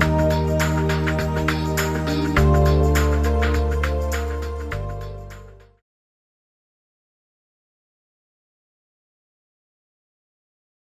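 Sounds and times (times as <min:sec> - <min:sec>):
background music with light beat: 0:00.0 - 0:05.8.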